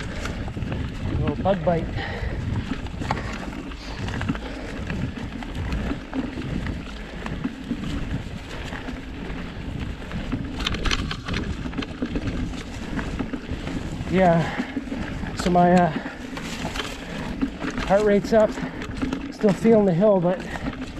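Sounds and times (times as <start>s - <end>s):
mountain bike rolling on dirt: 0.0s - 20.9s
wind rumbling on microphone: 0.0s - 20.9s.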